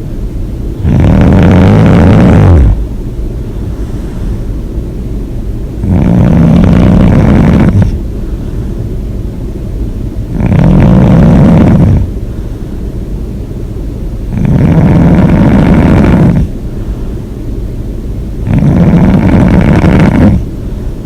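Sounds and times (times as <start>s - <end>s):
person snoring: 0.8s - 2.8s, 5.8s - 8.0s, 10.3s - 12.1s, 14.3s - 16.5s, 18.4s - 20.5s.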